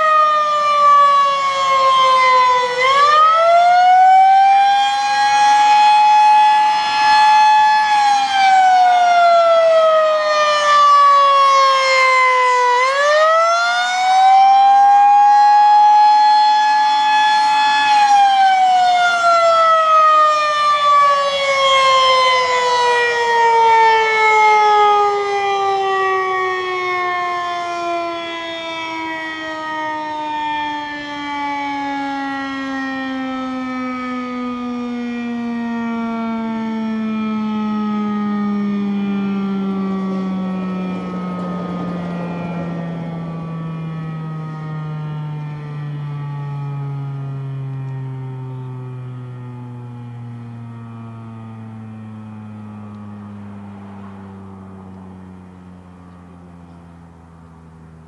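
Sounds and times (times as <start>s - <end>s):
warning siren wailing: 0.0s - 58.0s.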